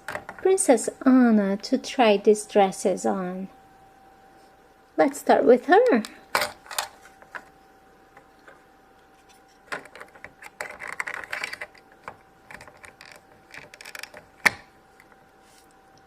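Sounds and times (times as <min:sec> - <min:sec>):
faint steady hum: 0:00.0 - 0:16.0
plastic toy pieces clicking and rustling: 0:09.7 - 0:11.8, 0:12.5 - 0:14.3.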